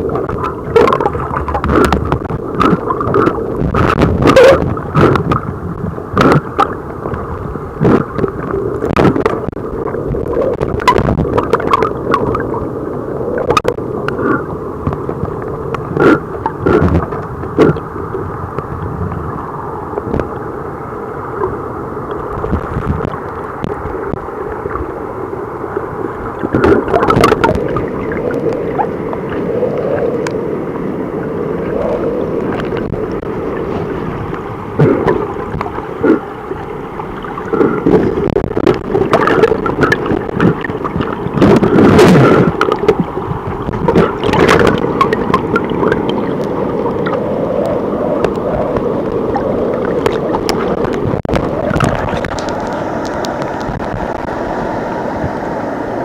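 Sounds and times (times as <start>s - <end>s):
knocks and splashes: 0.0s - 7.2s, 7.8s - 12.5s, 26.4s - 28.9s, 37.2s - 46.3s, 49.8s - 52.8s
muffled river water rushing: 0.0s - 56.0s.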